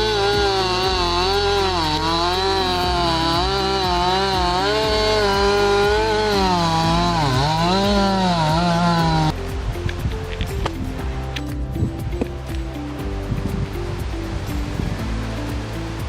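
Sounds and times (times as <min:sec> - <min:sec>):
chainsaw cutting a log: 0:00.0 - 0:09.4.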